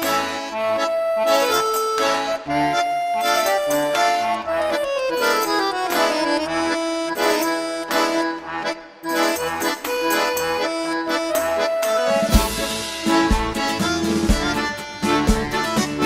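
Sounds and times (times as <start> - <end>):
descending melody: 9.8 - 16.0
pulsing bass notes: 11.2 - 16.0.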